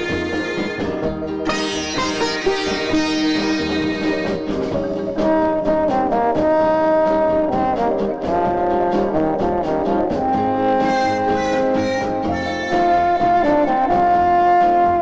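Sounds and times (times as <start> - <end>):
brass section playing pop tune: 0.0 - 7.0, 10.6 - 14.5
steady beat: 10.8 - 13.7.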